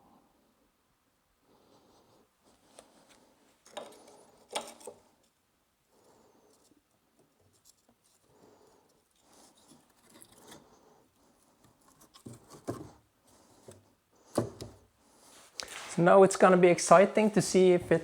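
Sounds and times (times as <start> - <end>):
hands scratching and rustling: 15.1 - 18.0.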